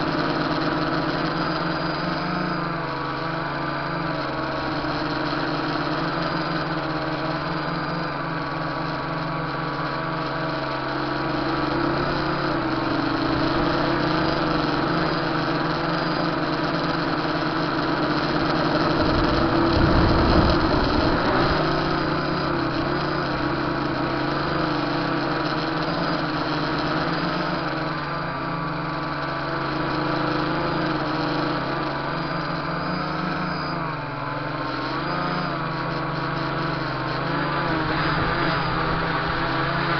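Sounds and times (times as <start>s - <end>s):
drone propellers buzzing: 0.0s - 39.9s
low rumble: 18.9s - 22.2s.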